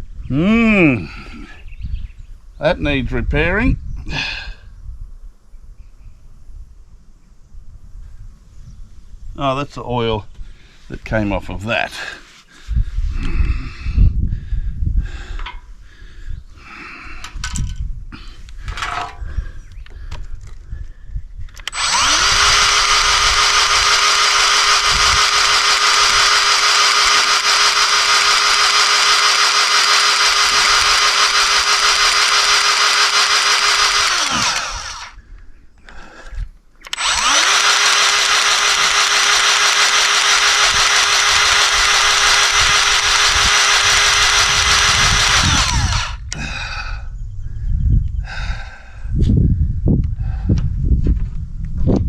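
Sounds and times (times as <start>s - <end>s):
grease gun motor whining: 21.5s - 35.2s, 36.8s - 46.4s.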